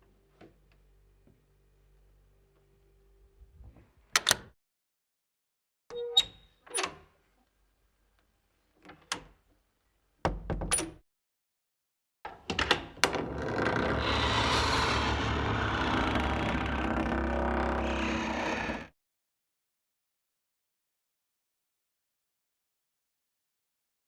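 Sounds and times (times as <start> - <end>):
door latch clicking: 4.2 - 4.5.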